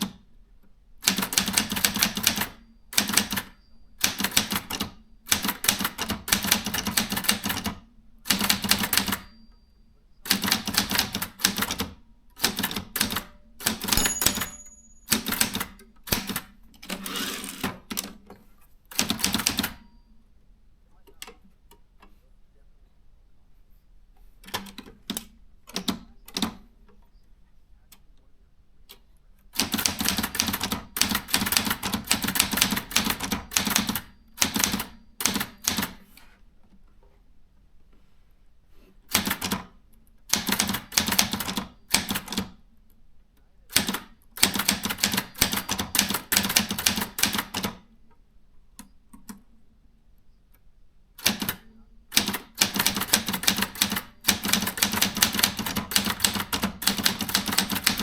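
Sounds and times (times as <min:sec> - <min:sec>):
typewriter keystrokes: 0:01.0 - 0:09.3, 0:10.3 - 0:16.6, 0:18.9 - 0:19.8, 0:29.6 - 0:36.0, 0:39.1 - 0:39.7, 0:40.3 - 0:42.5, 0:43.7 - 0:47.8, 0:51.2 - 0:58.0.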